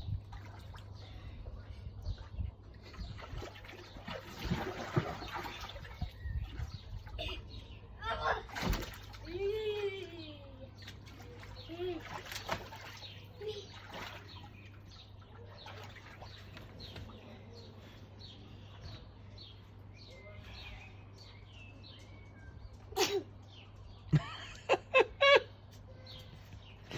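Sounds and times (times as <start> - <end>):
faint water splashing: 0.0 - 19.1
toddler sneezing: 23.0 - 23.3.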